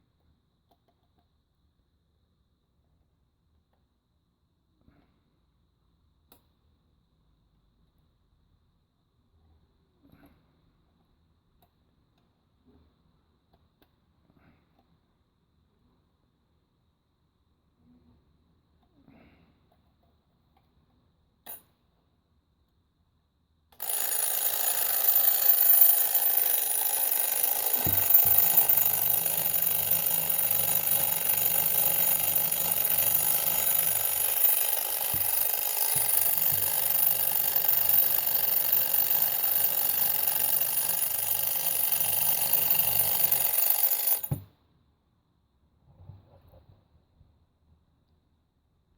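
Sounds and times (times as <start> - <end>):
twin-bell alarm clock ringing: 23.8 - 32.5, 41.9 - 44.3.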